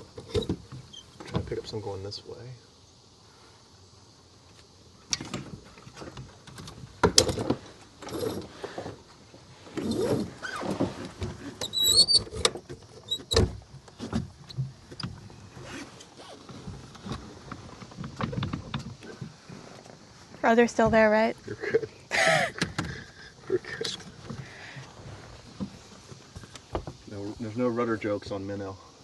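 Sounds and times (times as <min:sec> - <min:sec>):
sailboat gear knocks and clunks: 0:00.0 - 0:01.8, 0:05.1 - 0:09.0, 0:09.7 - 0:19.5, 0:20.7 - 0:21.8, 0:22.5 - 0:27.1
short high squeal: 0:11.6 - 0:12.4.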